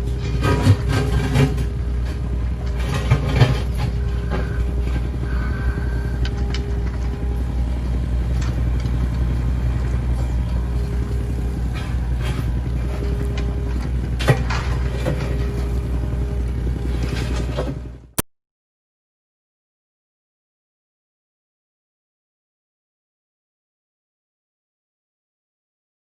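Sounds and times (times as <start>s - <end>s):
engine whine: 0.0s - 18.2s
excavator diesel engine running: 0.0s - 18.2s.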